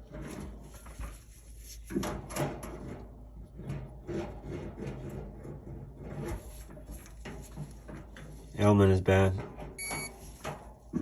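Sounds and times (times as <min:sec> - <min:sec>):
knocks and scrapes inside dryer: 0:00.0 - 0:11.0.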